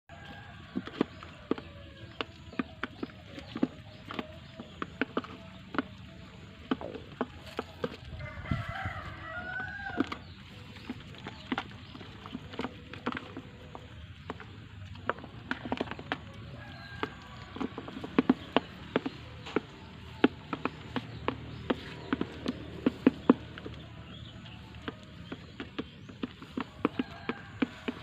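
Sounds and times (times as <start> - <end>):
chickens pecking at feed: 0.1 - 28.0
drawn-out chicken call: 0.1 - 28.0.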